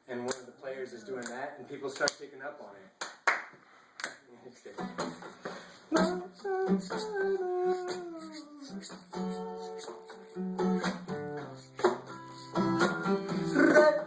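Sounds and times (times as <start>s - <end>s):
guitar playing: 4.8s - 14.0s.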